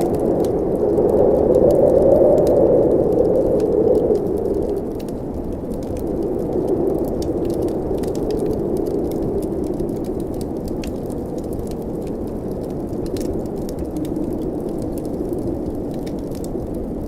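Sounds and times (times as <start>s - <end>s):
blizzard wind rushing: 0.0s - 17.0s
wood fire crackling: 0.0s - 17.0s.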